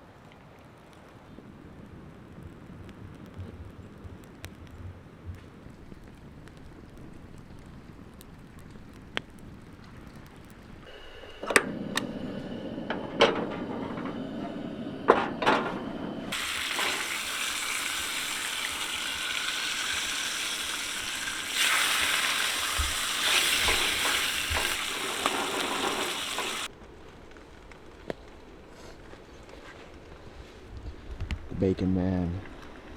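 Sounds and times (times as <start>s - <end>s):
bacon sizzling in a frying pan: 16.3s - 26.7s.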